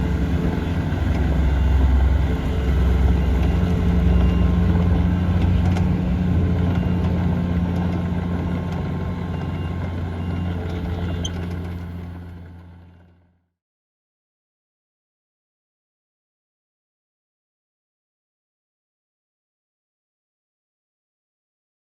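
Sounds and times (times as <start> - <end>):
excavator diesel engine running: 0.0 - 13.3.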